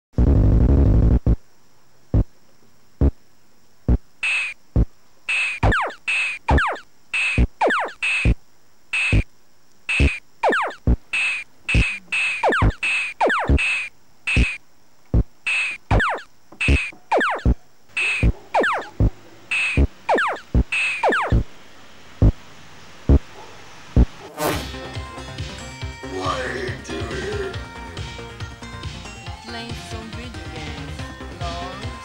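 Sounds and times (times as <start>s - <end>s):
falling zap glides: 5.3s - 8.4s, 9.9s - 14.6s, 15.5s - 21.4s, 24.2s - 24.8s
electronic kick drum beat: 10.8s - 11.0s, 22.2s - 22.4s, 23.1s - 23.3s
hissy snare bursts: 24.0s - 24.9s.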